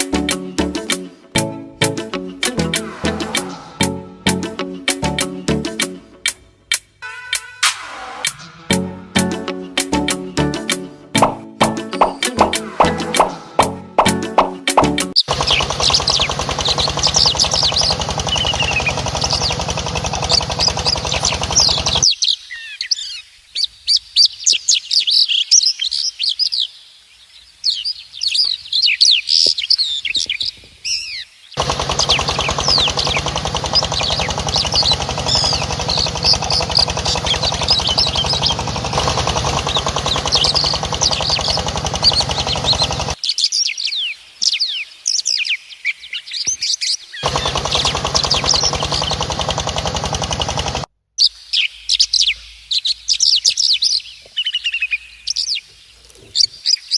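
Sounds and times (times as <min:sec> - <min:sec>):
small birds chirping: 0:14.4 - 0:56.9
motor hum: 0:15.2 - 0:22.0, 0:31.6 - 0:43.2, 0:47.2 - 0:50.9.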